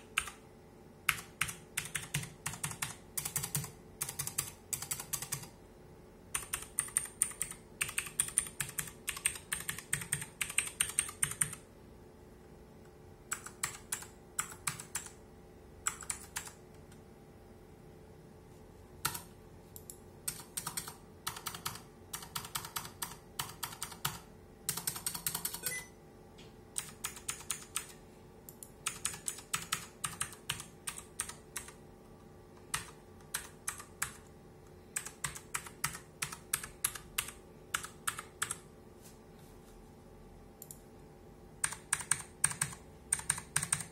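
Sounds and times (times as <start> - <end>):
typing on mechanical keyboard: 0.0 - 0.4, 1.1 - 5.6, 6.3 - 11.6, 13.3 - 15.2, 15.8 - 16.6, 19.0 - 25.8, 26.8 - 28.0, 28.6 - 31.8, 32.6 - 34.3, 35.0 - 38.7, 41.6 - 43.9.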